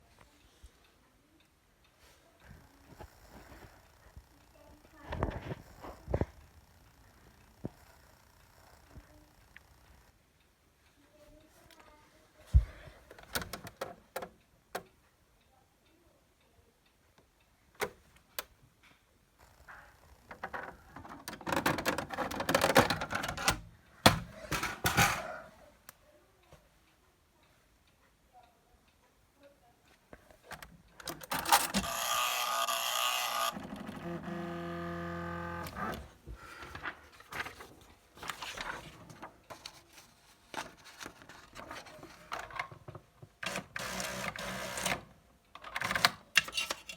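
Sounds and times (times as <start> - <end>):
print mechanism rattling: 19.4 - 25.3, 30.6 - 36.2, 43.4 - 45.0
typewriter clicks and clacks: 20.4 - 25.3
motor whirr: 31.3 - 36.1.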